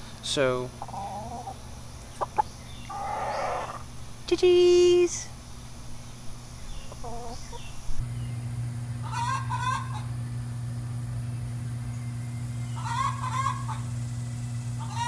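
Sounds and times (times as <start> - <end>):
steady low hum: 7.9 - 15.0
hen cackling: 8.6 - 10.5, 12.2 - 15.0.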